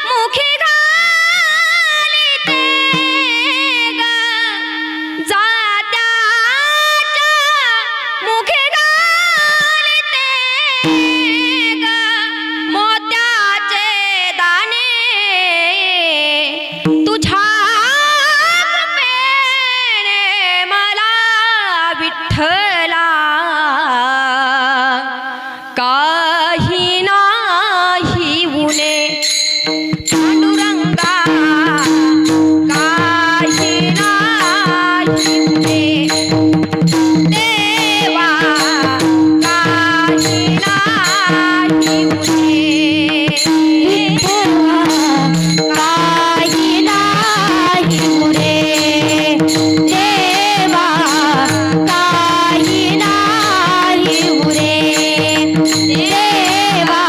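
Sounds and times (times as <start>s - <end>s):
woman singing: 0.0s - 57.0s
drum strokes: 2.4s - 5.7s, 28.7s - 57.0s.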